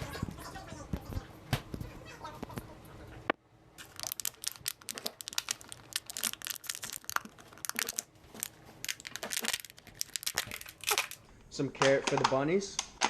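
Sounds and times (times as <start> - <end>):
packaging crinkling and tearing: 3.8 - 11.2.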